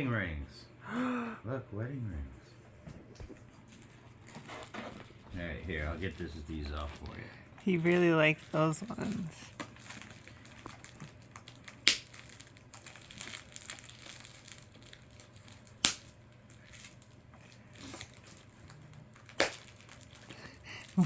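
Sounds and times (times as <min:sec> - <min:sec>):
packaging crinkling and rustling: 0:03.7 - 0:21.0
packaging sharp snaps: 0:09.5 - 0:17.0, 0:17.8 - 0:20.5.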